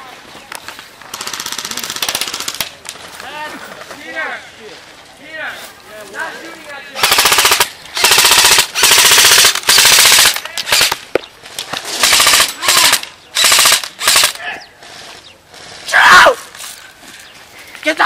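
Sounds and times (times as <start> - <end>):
airsoft rifle firing bursts: 1.1 - 2.7, 7.0 - 11.0, 12.0 - 15.1.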